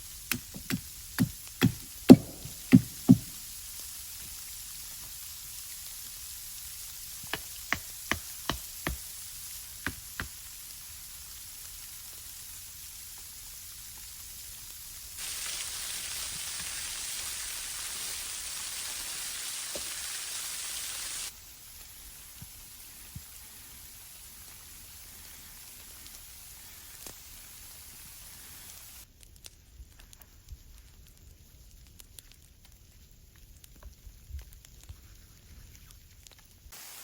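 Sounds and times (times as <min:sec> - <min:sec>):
rain hissing: 0:00.0 - 0:29.1, 0:36.6 - 0:37.0
sharp knocks: 0:00.3 - 0:03.3.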